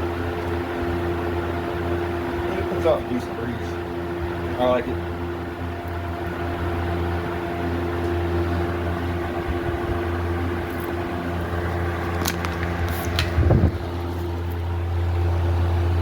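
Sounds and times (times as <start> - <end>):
box fan running: 0.0 - 16.0.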